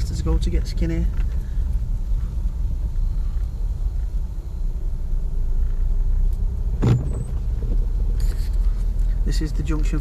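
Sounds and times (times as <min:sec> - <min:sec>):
car interior rumble while driving: 0:00.0 - 0:10.0.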